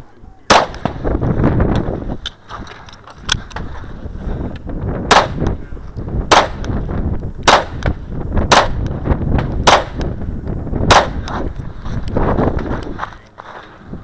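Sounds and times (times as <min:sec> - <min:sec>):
pistol shots: 0:00.5 - 0:01.2, 0:05.1 - 0:05.6, 0:06.3 - 0:06.8, 0:07.4 - 0:10.2, 0:10.8 - 0:11.4.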